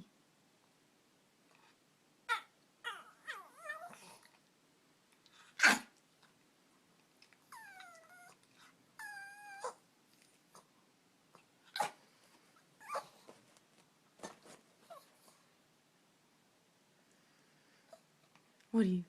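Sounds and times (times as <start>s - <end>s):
dog whining: 2.3s - 4.3s, 7.5s - 9.8s, 12.8s - 13.3s.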